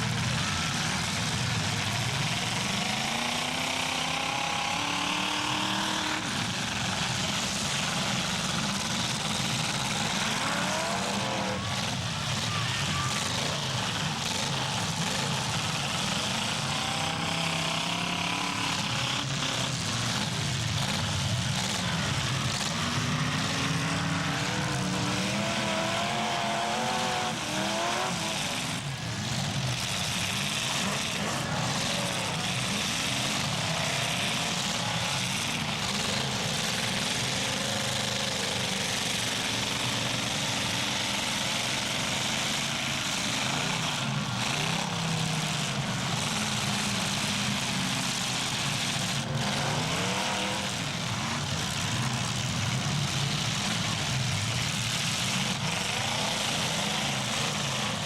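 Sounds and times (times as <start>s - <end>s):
car engines revving: 0.0s - 58.0s.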